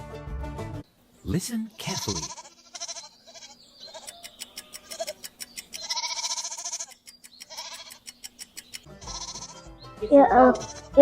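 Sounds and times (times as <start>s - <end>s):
goat bleating: 1.6s - 8.2s, 8.9s - 9.8s, 10.4s - 11.0s.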